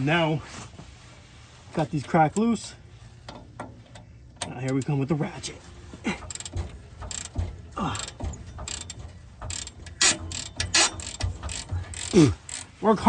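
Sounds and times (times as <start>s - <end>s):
hand ratchet clicking: 6.2s - 12.7s.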